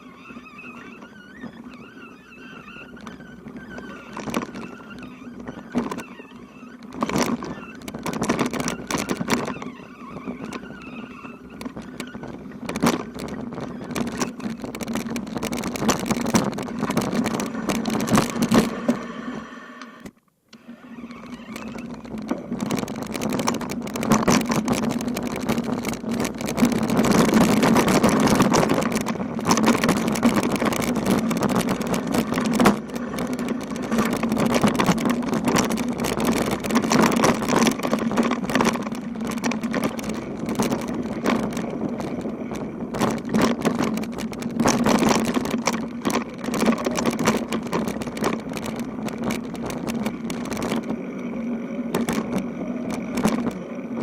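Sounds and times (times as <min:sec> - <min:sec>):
low road hum: 0:00.0 - 0:54.0
rushing road noise: 0:22.1 - 0:54.0.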